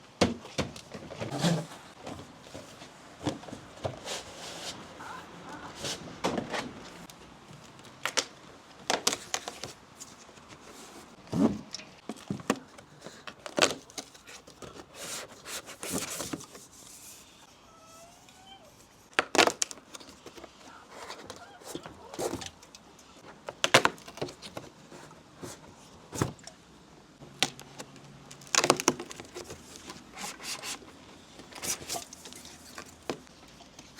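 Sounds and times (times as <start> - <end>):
cardboard packaging handled: 5.8 - 17.1, 27.4 - 33.9.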